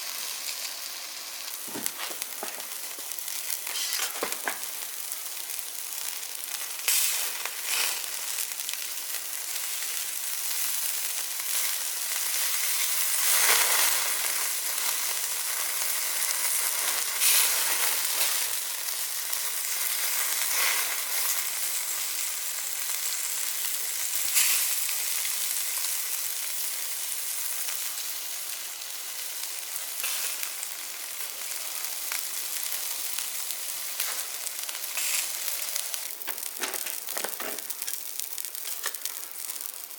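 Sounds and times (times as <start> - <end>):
meat sizzling on a grill: 0.0 - 39.9
crackles and pops: 0.5 - 18.1, 30.3 - 39.9.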